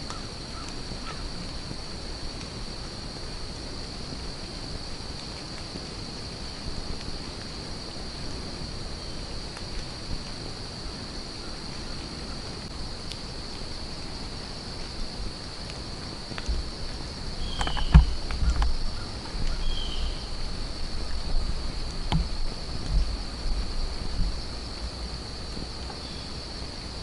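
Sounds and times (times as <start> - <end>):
high-pitched insect chorus: 0.0 - 27.0
wind buffeting microphone: 5.7 - 27.0
bird chirps: 17.4 - 18.2, 19.5 - 20.4
sharp clicks: 17.5 - 18.8.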